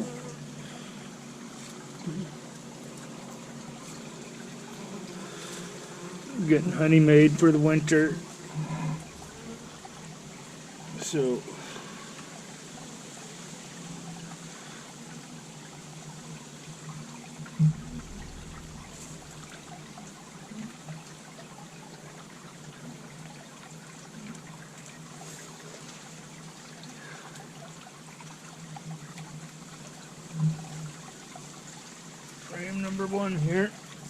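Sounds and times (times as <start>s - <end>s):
honeybees buzzing: 0.0s - 34.0s
thump: 17.6s - 19.3s.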